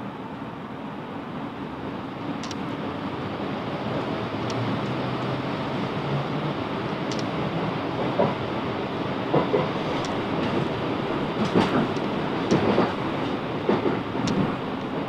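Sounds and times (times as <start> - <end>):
electric train rumble: 0.0 - 15.0
wheels clicking over track: 9.3 - 15.0.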